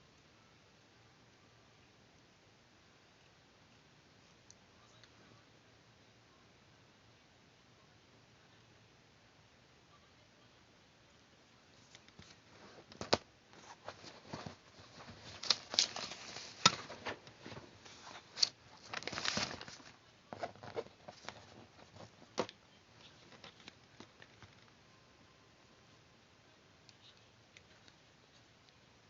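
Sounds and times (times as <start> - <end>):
paper crinkling rustle: 11.8 - 24.8.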